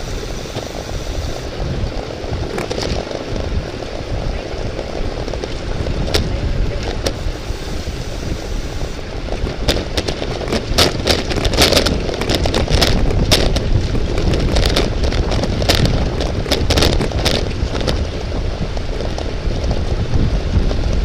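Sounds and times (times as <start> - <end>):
wind buffeting microphone: 0.0 - 21.0
sharp clicks and rattles: 1.9 - 3.4, 9.3 - 18.2.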